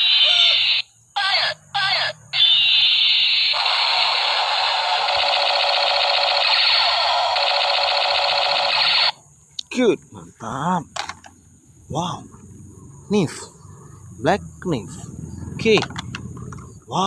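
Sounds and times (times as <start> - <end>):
toy gun laser sweep: 2.4 - 9.2
electronic rattling firing sound: 2.6 - 9.1.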